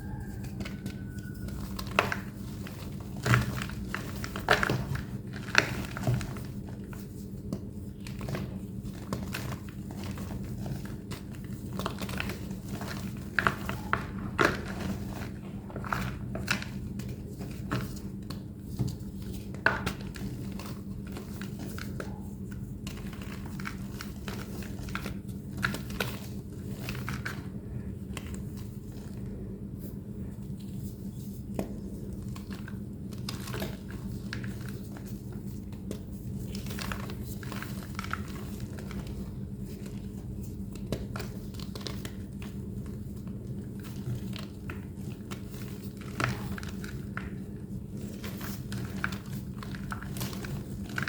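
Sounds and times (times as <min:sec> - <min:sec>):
squeaky compressed chalk powder: 0:00.0 - 0:01.7
steady low hum: 0:00.0 - 0:51.0.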